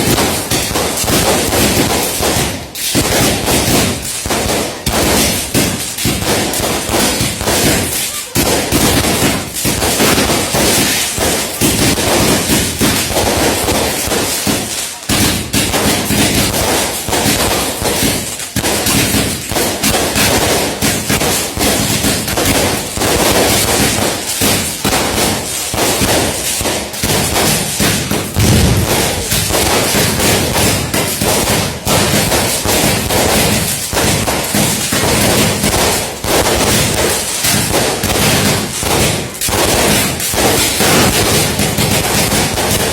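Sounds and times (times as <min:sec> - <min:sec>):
fireworks bangs and crackles: 0:00.0 - 0:42.9.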